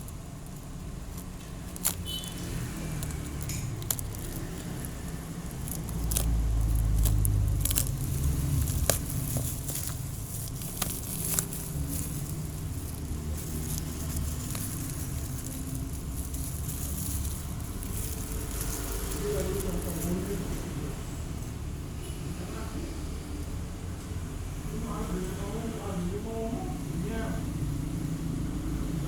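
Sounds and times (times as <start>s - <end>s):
rustling: 0.0s - 20.8s.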